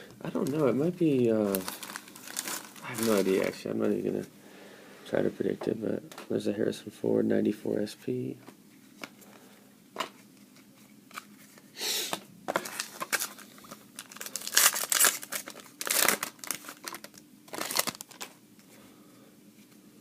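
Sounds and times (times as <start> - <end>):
wrapper torn open and crinkled: 1.4 - 3.5, 12.7 - 13.4, 14.0 - 18.4.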